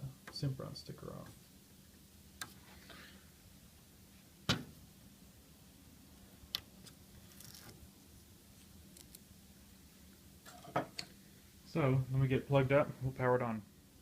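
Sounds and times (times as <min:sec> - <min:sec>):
sticker tearing crackles: 0:06.8 - 0:07.8.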